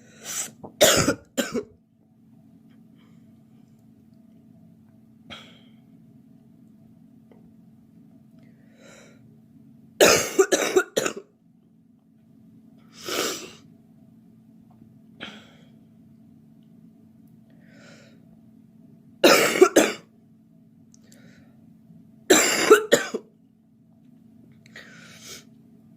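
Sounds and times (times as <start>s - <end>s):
girl coughing: 0.8s - 1.7s, 10.0s - 11.3s, 19.2s - 20.1s, 22.3s - 23.3s
faint breaths: 21.0s - 21.7s, 24.7s - 25.6s.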